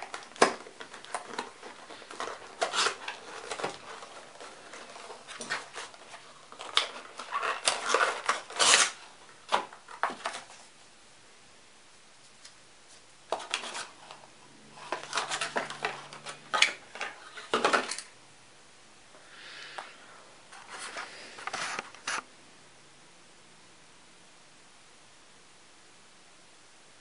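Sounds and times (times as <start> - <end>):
rustling scrapes of packaging: 0.0 - 10.8, 13.3 - 18.1, 20.5 - 22.2.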